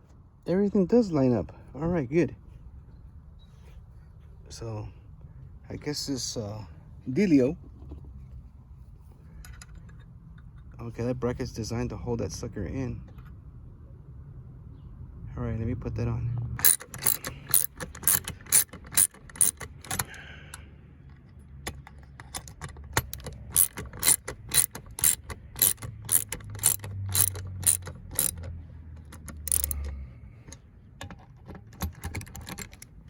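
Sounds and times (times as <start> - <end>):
hand ratchet clicking: 16.6 - 20.2, 21.7 - 30.0.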